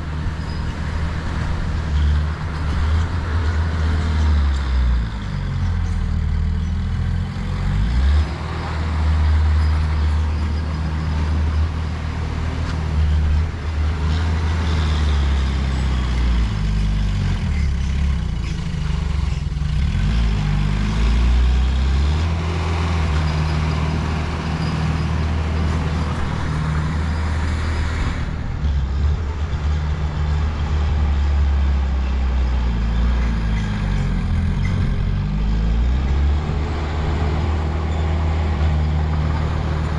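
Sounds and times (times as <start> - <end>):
heavy diesel engines running: 0.0 - 39.9.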